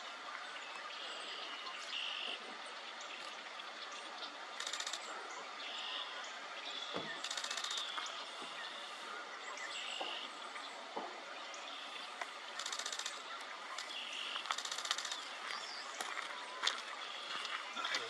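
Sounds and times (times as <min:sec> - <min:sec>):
camera shutter clicking in bursts: 0:04.6 - 0:05.1, 0:07.2 - 0:08.0, 0:12.5 - 0:13.2, 0:13.8 - 0:15.3.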